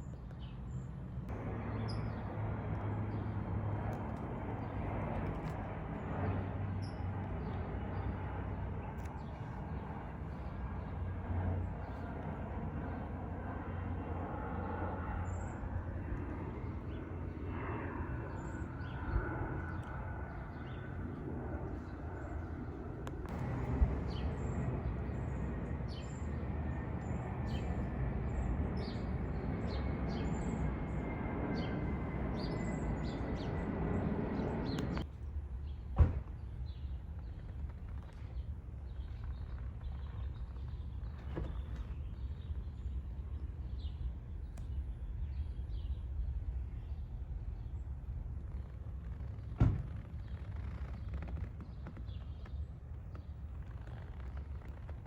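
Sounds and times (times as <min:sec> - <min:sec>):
low mechanical rumble: 0:01.3 - 0:35.4.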